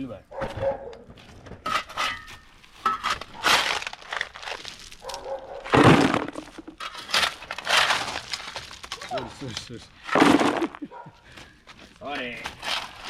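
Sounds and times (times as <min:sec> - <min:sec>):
hard material clattering into containers: 0:05.6 - 0:10.8.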